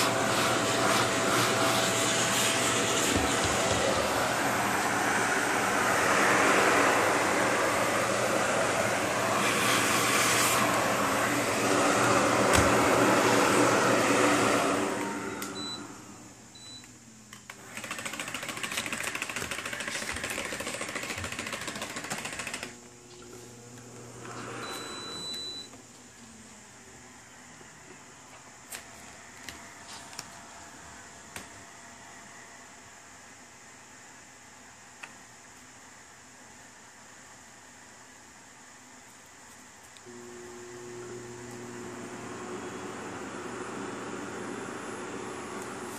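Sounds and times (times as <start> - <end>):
vacuum cleaner motor: 0.0 - 16.7, 17.5 - 26.6, 40.0 - 45.9.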